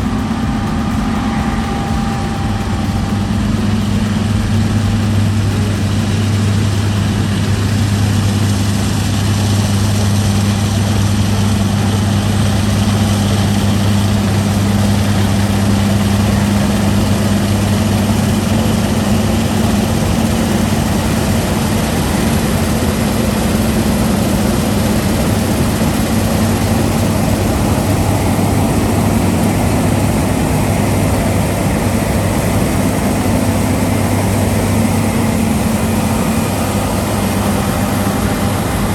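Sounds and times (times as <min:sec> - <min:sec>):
diesel engine humming: 0:00.0 - 0:38.9.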